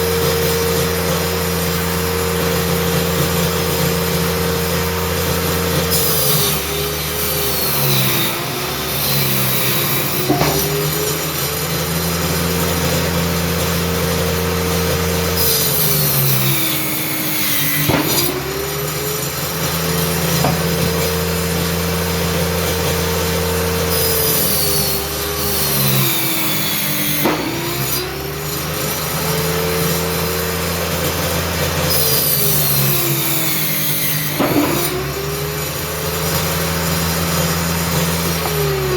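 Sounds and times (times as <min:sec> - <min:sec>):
circular saw cutting board: 0:00.0 - 0:38.9.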